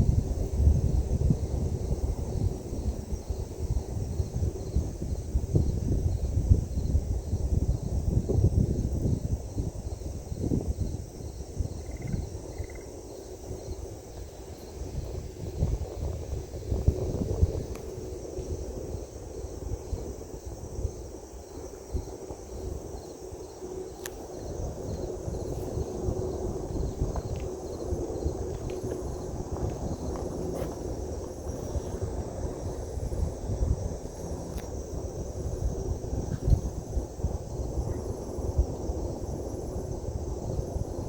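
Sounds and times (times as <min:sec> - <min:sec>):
insects chirping: 0:00.0 - 0:41.0
wind gusts on microphone: 0:00.0 - 0:41.0
low rumble: 0:24.5 - 0:41.0.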